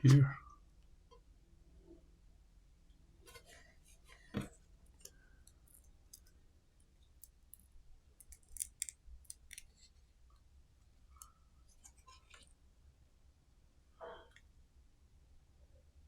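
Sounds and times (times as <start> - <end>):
faint clicks of small parts: 4.8 - 10.5.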